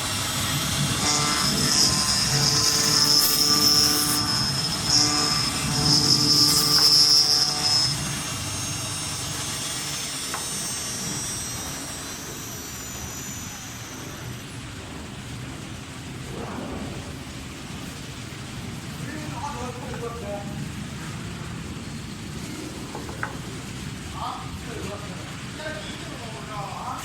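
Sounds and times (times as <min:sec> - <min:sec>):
machine motor whine winding down: 0:00.0 - 0:15.1
steady machine hum: 0:00.0 - 0:26.9.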